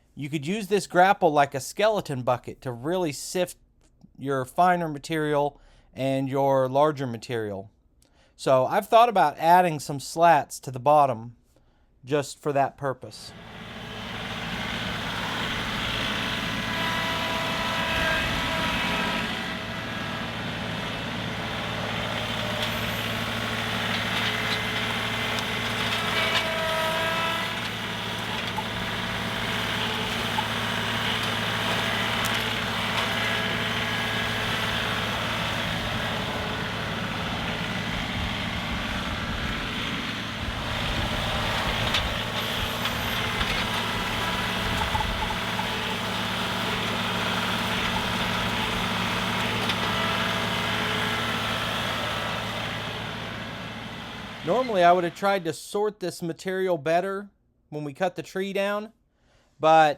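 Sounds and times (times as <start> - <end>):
tractor diesel engine running: 13.3 - 55.4.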